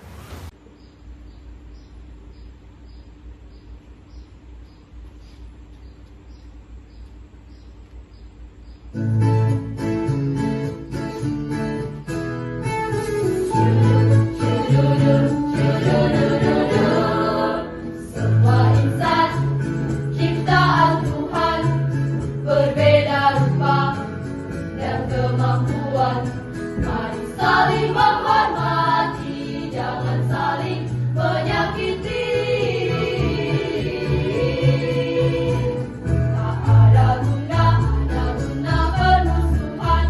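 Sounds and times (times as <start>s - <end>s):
choir singing in parts: 13.4s - 40.0s.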